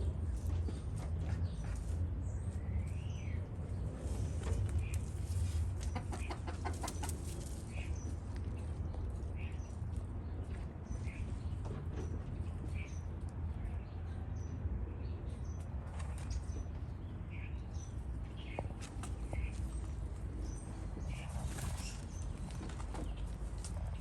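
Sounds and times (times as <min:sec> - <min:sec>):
steady low rumble: 0:00.0 - 0:24.0
chickens clucking: 0:04.3 - 0:08.0.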